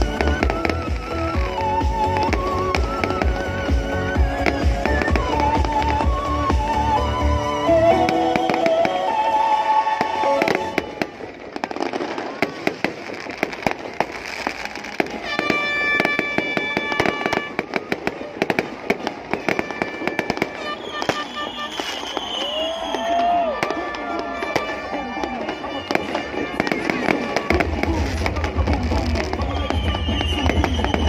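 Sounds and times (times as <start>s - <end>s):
music from sound system: 0.0s - 10.9s, 25.8s - 31.0s
fireworks bursting and crackling: 0.0s - 31.0s.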